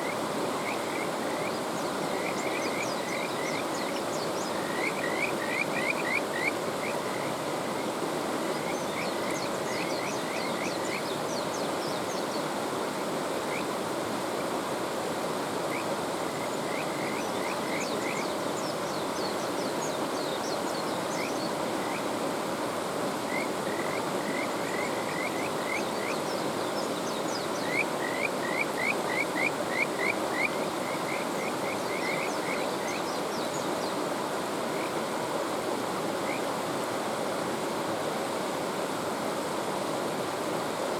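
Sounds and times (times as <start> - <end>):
frogs calling with whistle-like notes: 0.0 - 12.2, 13.4 - 13.8, 15.7 - 22.1, 23.2 - 34.0, 36.2 - 36.5
mountain stream rushing: 0.0 - 40.9.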